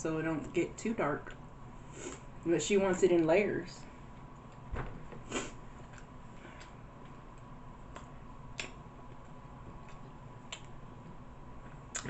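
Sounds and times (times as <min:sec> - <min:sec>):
faint steady hum: 0:00.0 - 0:12.0
mouth clicks and chewing: 0:07.9 - 0:08.8.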